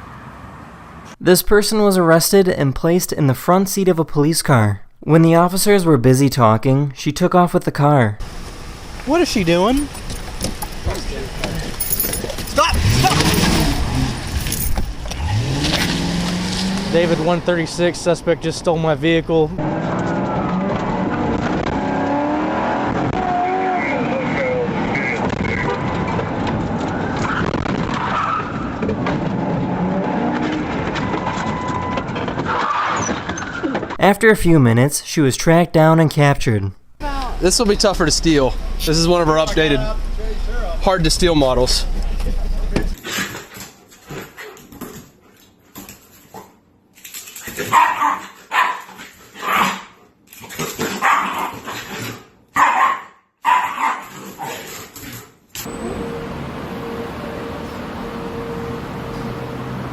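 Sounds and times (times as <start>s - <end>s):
car engine accelerating: 8.2s - 27.4s, 28.8s - 31.2s, 37.1s - 43.0s, 55.6s - 59.9s
dog barking: 47.6s - 50.0s, 51.0s - 51.6s, 52.6s - 54.5s.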